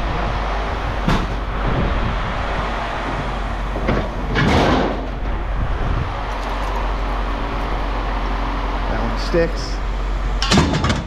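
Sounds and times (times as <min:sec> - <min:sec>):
engine humming: 0:00.0 - 0:11.0
metal scrap clanking: 0:10.4 - 0:11.0.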